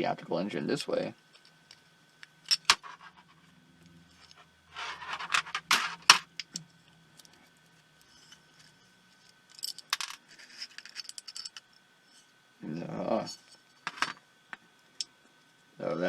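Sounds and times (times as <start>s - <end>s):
parts scraping: 1.4s - 6.6s, 7.2s - 12.3s.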